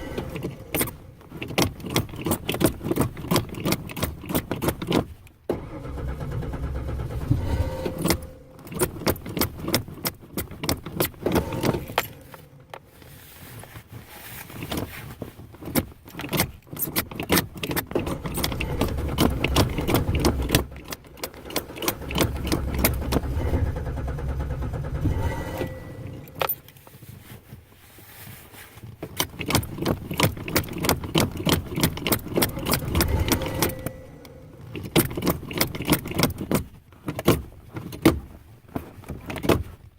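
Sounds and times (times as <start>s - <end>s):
engine cranking by starter: 0.0s - 12.8s, 16.8s - 26.7s, 29.4s - 36.7s.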